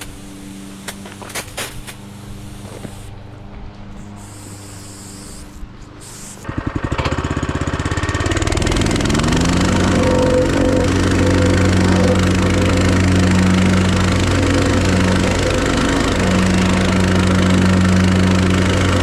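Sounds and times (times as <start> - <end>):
small engine starting and running: 0.0 - 19.0
low hum: 8.2 - 19.0.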